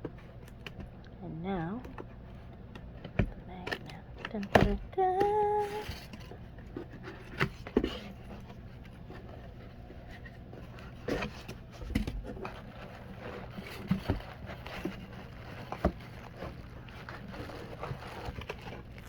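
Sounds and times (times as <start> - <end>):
packaging rustling: 12.2 - 19.0.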